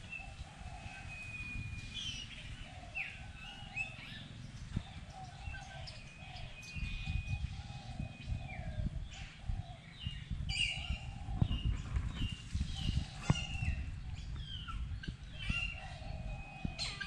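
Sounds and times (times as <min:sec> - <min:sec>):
birds chirping and whistling: 0:00.0 - 0:17.0
steady low rumble: 0:00.0 - 0:17.0.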